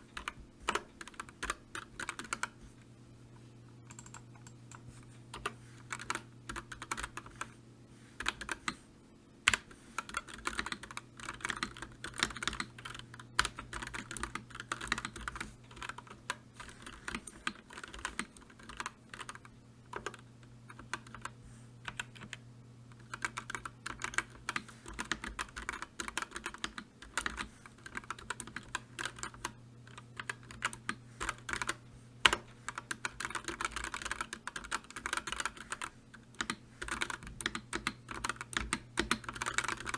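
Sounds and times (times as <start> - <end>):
low steady hum: 0.0 - 39.9
keyboard typing clicks: 3.9 - 7.2, 23.0 - 39.9.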